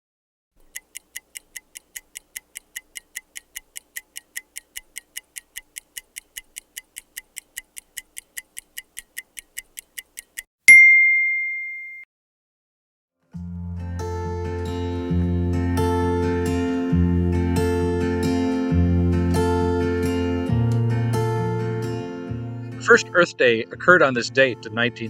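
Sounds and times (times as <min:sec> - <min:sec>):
mechanical timer ticking: 0:00.6 - 0:10.5
timer bell ding: 0:10.7 - 0:12.0.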